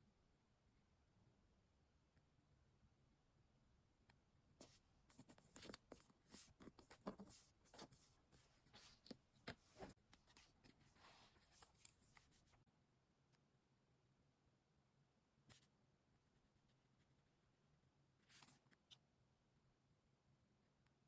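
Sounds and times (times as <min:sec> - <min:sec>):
paper rustling and crinkling: 0:04.6 - 0:12.5.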